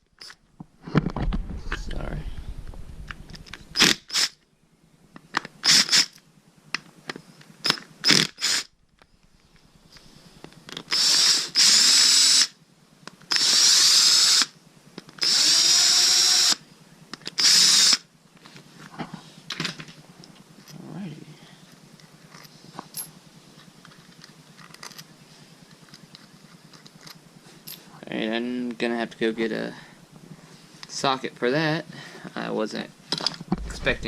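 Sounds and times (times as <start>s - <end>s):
power drill spinning up: 3.5s - 4.4s, 5.6s - 6.2s, 7.6s - 8.7s, 10.9s - 12.6s, 13.3s - 14.5s, 15.2s - 16.6s, 17.3s - 18.0s.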